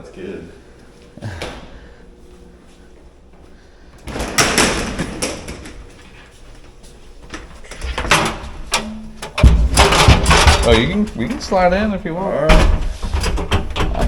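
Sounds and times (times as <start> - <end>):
knocks and rustling: 7.3 - 10.9.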